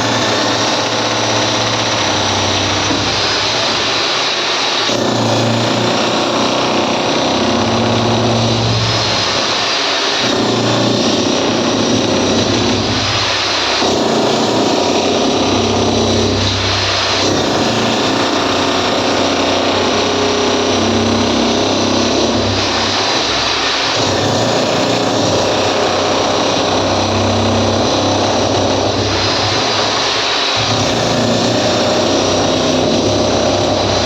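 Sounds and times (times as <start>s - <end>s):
power tool running loudly: 0.0s - 34.0s.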